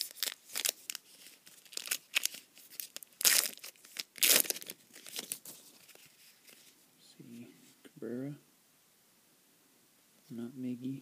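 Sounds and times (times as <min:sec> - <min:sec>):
card pack wrapper crinkling: 0:00.0 - 0:06.7.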